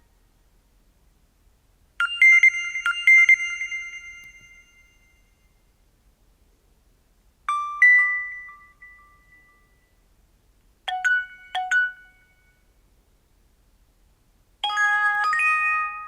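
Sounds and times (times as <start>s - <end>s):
phone electronic chime tones: 2.0s - 5.3s.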